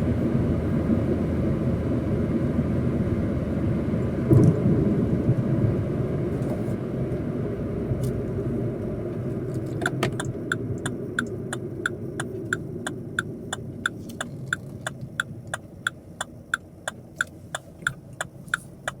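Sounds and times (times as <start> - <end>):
engine and road rumble: 0.0 - 19.0
turn signal ticking: 9.6 - 19.0.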